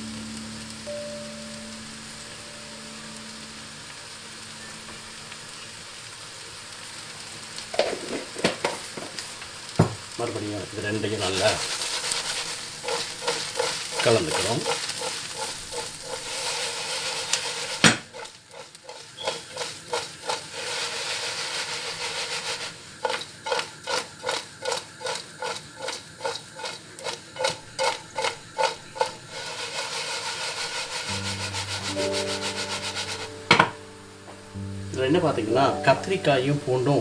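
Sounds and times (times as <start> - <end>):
background music: 0.0 - 6.3, 31.0 - 37.0
oil sizzling: 0.0 - 37.0
spoon stirring and scraping pan: 6.9 - 37.0.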